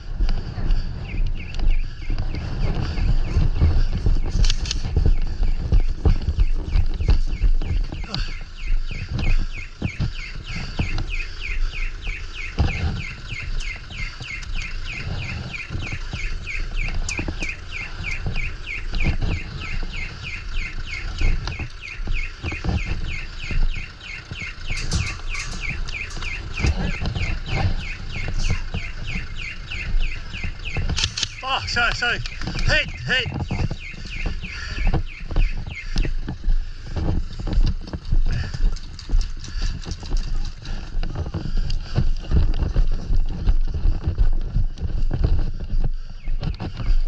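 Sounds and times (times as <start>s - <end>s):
footsteps and gear rustling: 0.0s - 47.0s
high chirp: 23.1s - 33.1s.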